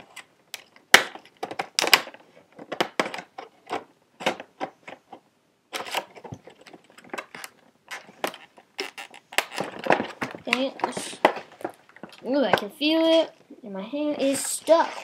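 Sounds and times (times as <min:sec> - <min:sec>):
plastic packaging crackling: 0:05.8 - 0:12.4.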